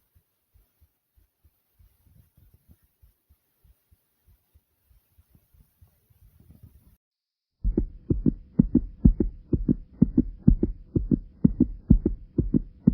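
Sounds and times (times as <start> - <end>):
faint steady hum: 7.6 - 12.9
heartbeat thumps: 7.6 - 12.9.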